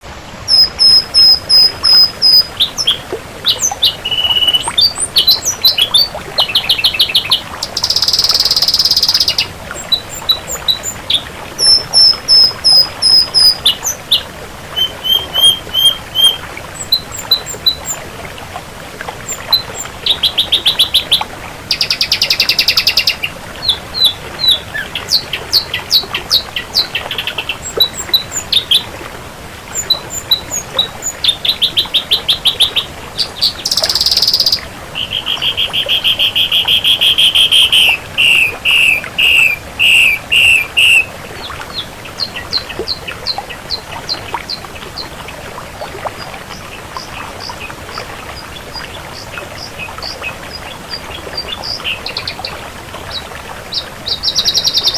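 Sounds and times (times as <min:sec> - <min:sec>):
bird singing whistles and trills: 0:00.5 - 0:18.0, 0:19.3 - 0:28.9, 0:29.7 - 0:44.6, 0:54.1 - 0:54.9
harsh buzzy bird call: 0:14.8 - 0:17.9, 0:31.3 - 0:41.1.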